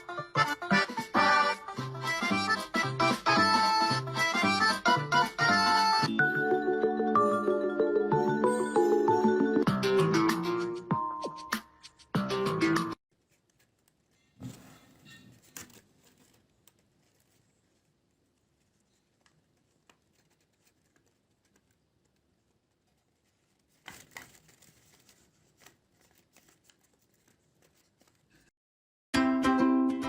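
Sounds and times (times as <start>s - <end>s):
faint handling rustles and clicks: 13.2s - 28.5s.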